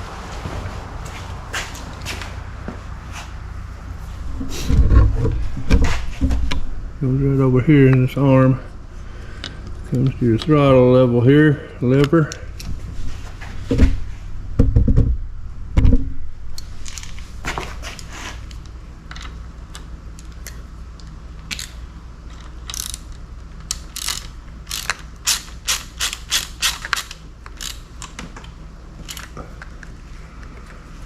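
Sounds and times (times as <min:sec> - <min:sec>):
heavy knocks on metal: 0:13.6 - 0:16.2.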